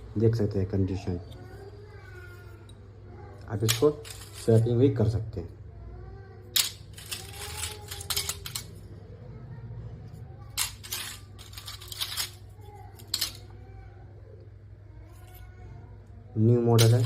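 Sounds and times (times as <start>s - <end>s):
circuit boards clinking: 3.5s - 4.7s, 6.5s - 8.8s, 10.6s - 13.5s, 16.7s - 17.0s.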